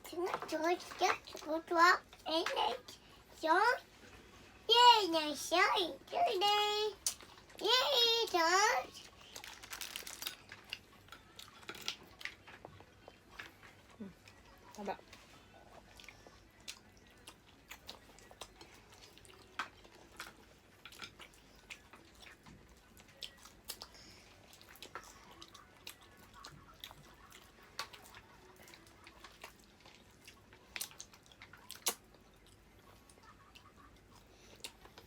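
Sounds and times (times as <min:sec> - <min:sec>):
chewing seafood: 0:08.5 - 0:35.0.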